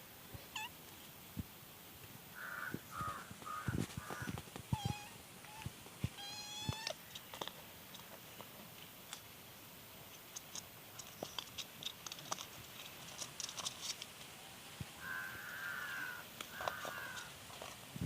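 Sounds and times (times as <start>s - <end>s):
cat meowing: 0.5s - 0.8s, 2.6s - 7.0s.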